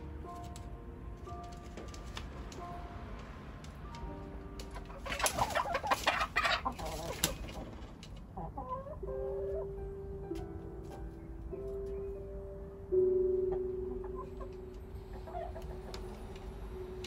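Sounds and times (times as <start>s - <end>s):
background music: 0.0s - 17.0s
chickens clucking: 4.6s - 9.8s, 13.4s - 16.7s
chicken squawking: 4.8s - 7.4s.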